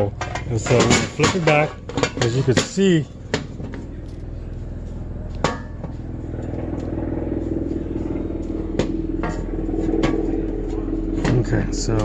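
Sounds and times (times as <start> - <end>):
steady motor drone: 0.0 - 12.0
sharp metallic clack: 0.2 - 4.0.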